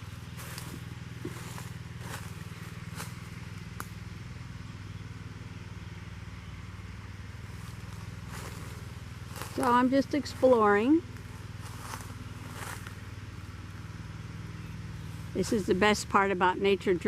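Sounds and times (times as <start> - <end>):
footsteps crunching on forest floor: 0.0 - 4.0, 7.4 - 13.2
tractor engine droning: 0.0 - 17.0.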